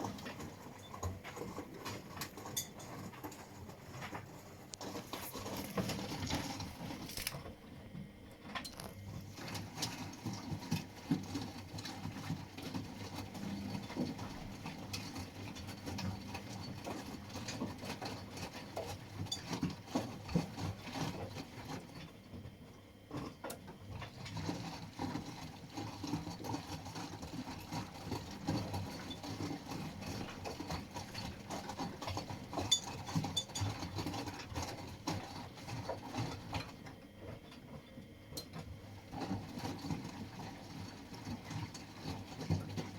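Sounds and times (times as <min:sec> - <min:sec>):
laundry tumbling with knocks: 0:00.0 - 0:07.6
washing machine motor humming: 0:00.0 - 0:42.9.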